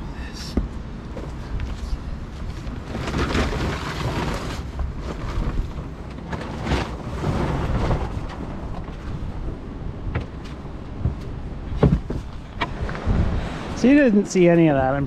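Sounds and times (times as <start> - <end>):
wind buffeting microphone: 0.6 - 15.0.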